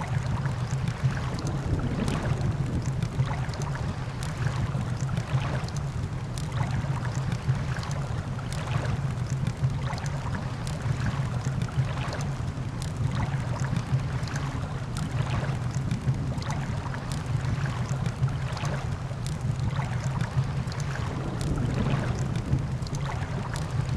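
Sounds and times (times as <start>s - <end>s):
surf rumbling: 0.0s - 7.1s, 11.9s - 23.9s
wind: 0.0s - 23.9s
campfire crackling and popping: 0.1s - 23.9s.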